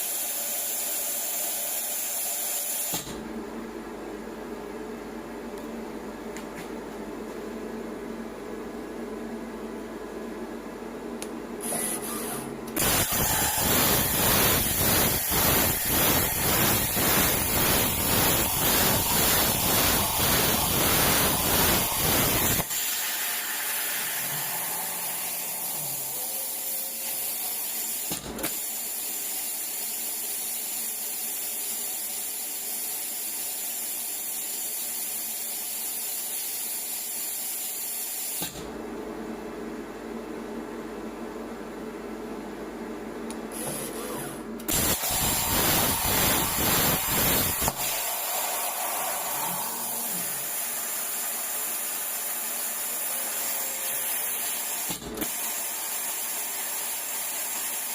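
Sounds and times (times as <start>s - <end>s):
machine pulsing hiss: 11.6s - 38.6s, 43.5s - 57.9s.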